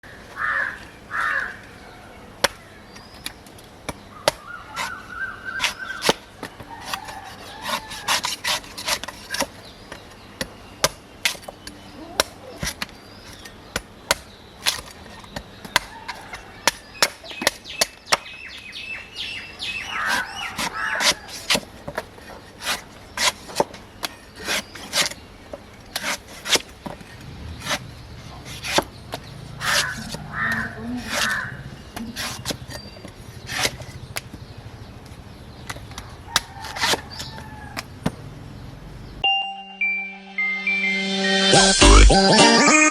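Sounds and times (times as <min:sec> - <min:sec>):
crows cawing: 0:00.1 - 0:01.8, 0:04.1 - 0:06.0, 0:29.6 - 0:31.7
blade chopping coconut: 0:02.4 - 0:18.7, 0:19.8 - 0:38.2.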